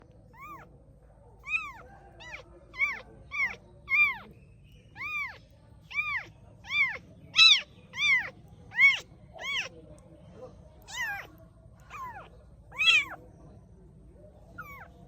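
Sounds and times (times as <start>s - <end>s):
cat meowing: 0.3s - 0.6s, 1.4s - 4.2s, 5.0s - 9.7s, 10.9s - 11.3s, 11.9s - 13.2s, 14.6s - 14.9s.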